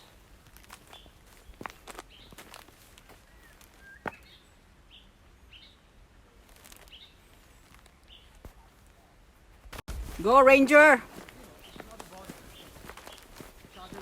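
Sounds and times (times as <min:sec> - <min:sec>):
small bird chirping: 0:00.8 - 0:05.9, 0:06.7 - 0:08.7.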